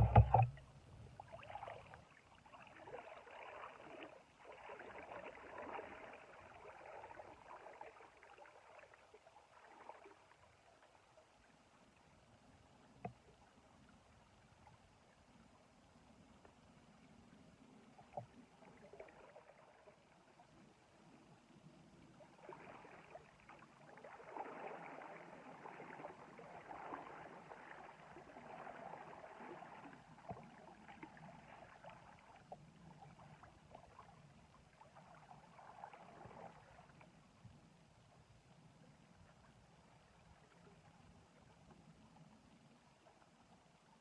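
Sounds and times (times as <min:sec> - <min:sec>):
river water lapping: 0:00.0 - 0:08.0.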